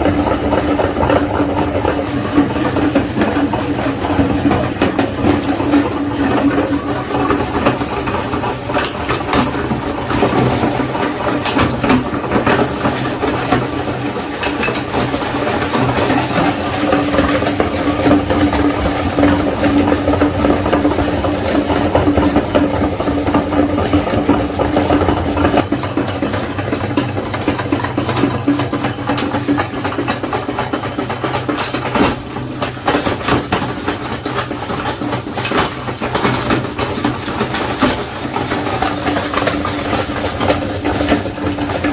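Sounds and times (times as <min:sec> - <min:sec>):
electric meat grinder motor hum: 0:00.0 - 0:31.4.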